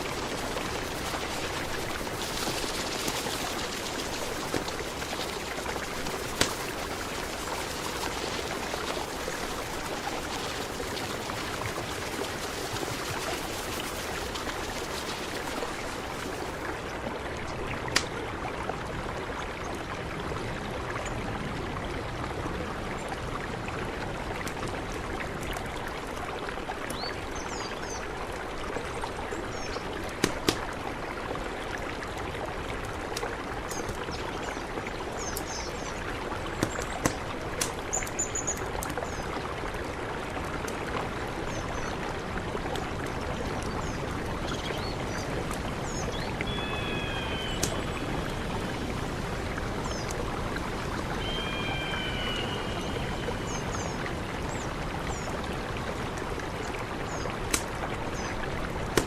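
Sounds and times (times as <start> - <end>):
river water rushing: 0.0 - 19.1, 28.3 - 59.0
faint high chirps: 51.2 - 54.0.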